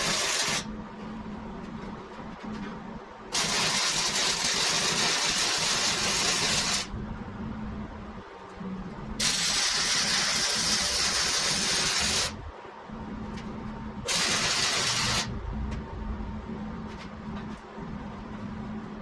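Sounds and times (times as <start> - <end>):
arc welding hiss: 0.0 - 0.7, 3.4 - 6.9, 9.2 - 12.4, 14.1 - 15.3
low steady hum: 0.0 - 3.4, 5.9 - 19.0.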